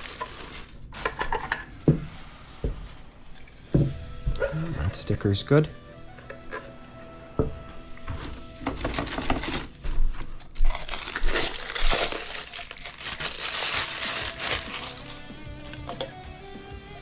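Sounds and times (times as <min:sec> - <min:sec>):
packaging crinkling and rustling: 0:00.0 - 0:03.6, 0:08.1 - 0:15.2.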